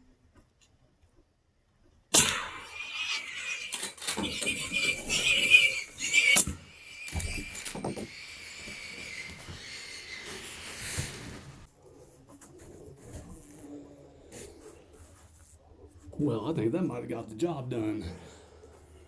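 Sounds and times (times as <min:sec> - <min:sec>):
hogs squealing: 0:02.2 - 0:11.6.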